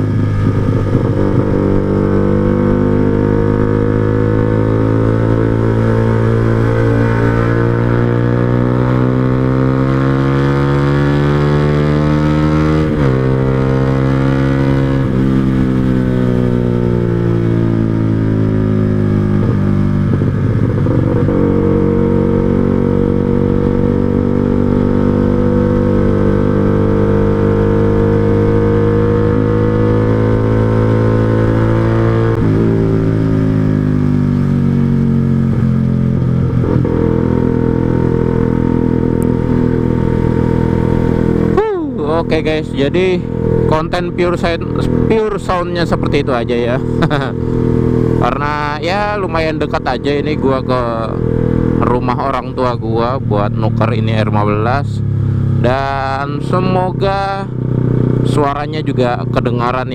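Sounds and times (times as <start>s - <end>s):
motorcycle engine accelerating: 0.0s - 59.9s.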